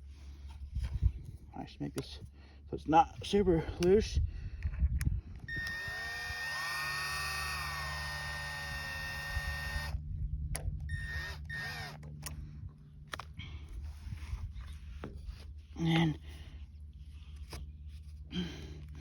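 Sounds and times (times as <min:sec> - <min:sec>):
small electric motor whining: 0:05.4 - 0:10.0, 0:10.8 - 0:12.4
short whirs: 0:05.5 - 0:12.4.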